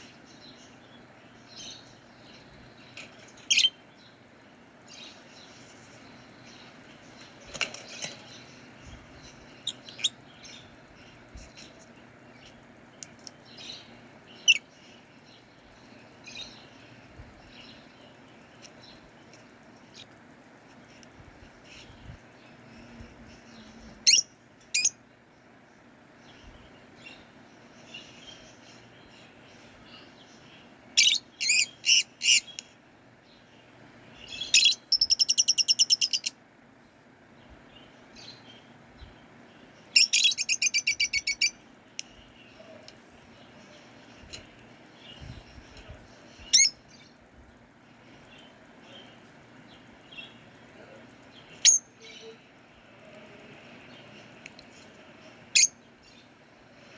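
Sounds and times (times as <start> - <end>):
rapid bird chattering: 0.0 - 4.3, 4.9 - 20.1, 34.2 - 36.4, 39.2 - 47.1
lovebirds chirping: 0.0 - 56.9
steady background hiss: 0.0 - 56.9.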